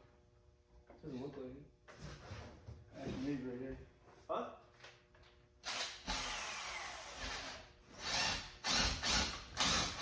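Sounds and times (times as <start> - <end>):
cordless drill whining: 5.6 - 10.0.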